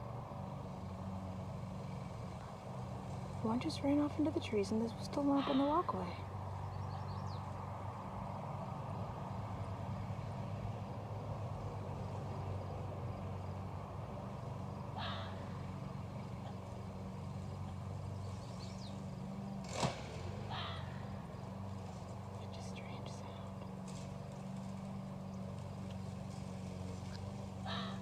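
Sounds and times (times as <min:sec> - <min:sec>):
lawnmower engine running: 0:00.0 - 0:28.0
sharp animal call: 0:15.0 - 0:15.5, 0:20.5 - 0:21.0, 0:27.6 - 0:28.0.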